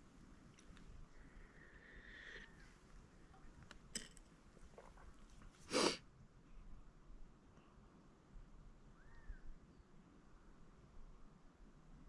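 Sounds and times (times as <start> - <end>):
person sneezing: 5.7 - 6.0.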